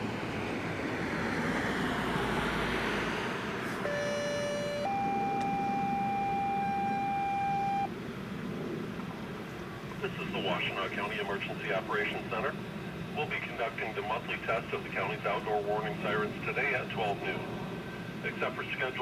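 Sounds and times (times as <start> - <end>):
outdoor background noise: 0.0 - 19.0
two-tone paging alert: 3.9 - 7.9.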